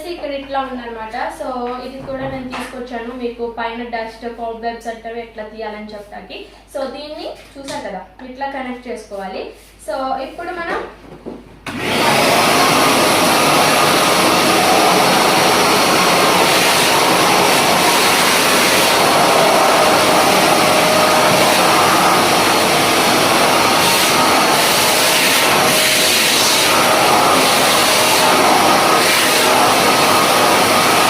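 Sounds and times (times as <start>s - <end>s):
vacuum cleaner motor spinning up: 11.7s - 31.0s
vacuum cleaner rushing suction: 11.7s - 31.0s.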